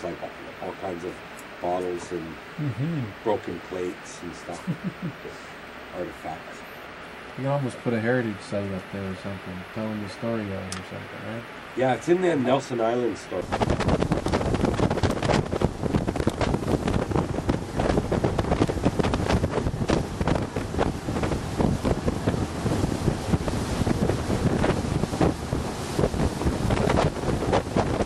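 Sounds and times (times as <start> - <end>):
water rushing: 0.0 - 28.0
boat engine running: 13.2 - 28.0
wind buffeting microphone: 13.4 - 28.0.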